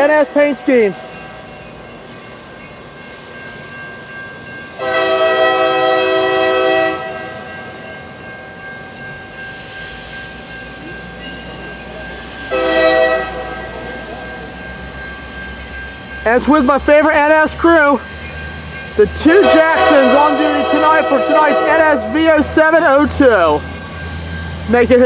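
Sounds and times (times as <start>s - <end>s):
train rumble: 0.0s - 25.0s
locomotive air horn blast: 4.8s - 7.2s, 12.5s - 13.5s, 19.4s - 22.2s.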